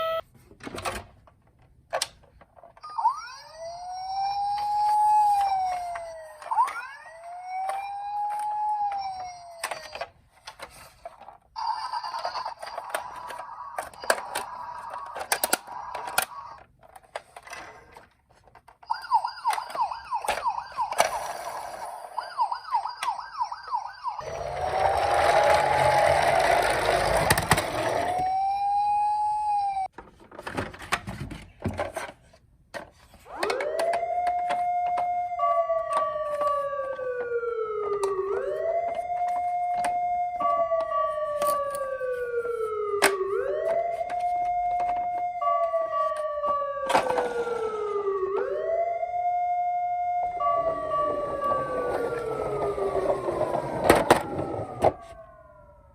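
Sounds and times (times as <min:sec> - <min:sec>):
toy electronic sirens: 0:00.0 - 0:00.3, 0:02.8 - 0:18.1, 0:18.7 - 0:29.9, 0:33.1 - 0:55.9
toys being handled clicks: 0:01.2 - 0:03.5, 0:04.4 - 0:11.5, 0:12.1 - 0:21.3, 0:35.8 - 0:42.1.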